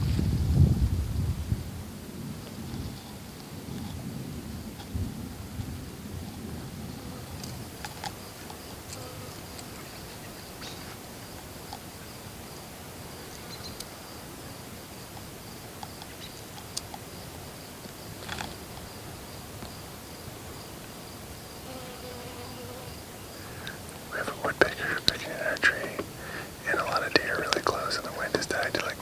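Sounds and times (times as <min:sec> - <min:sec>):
high insect drone: 0:06.6 - 0:29.0
low hum of outdoor air: 0:22.4 - 0:29.0.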